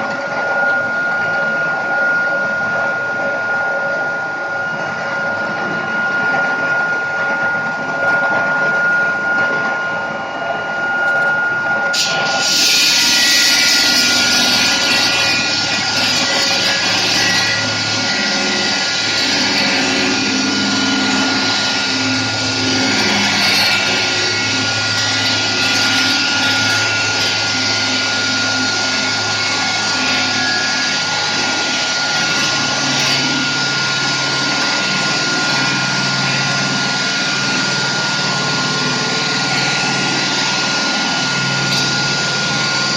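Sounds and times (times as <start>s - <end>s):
stone-cutting saw whine: 0.0s - 42.9s
blade grinding stone: 12.0s - 42.9s.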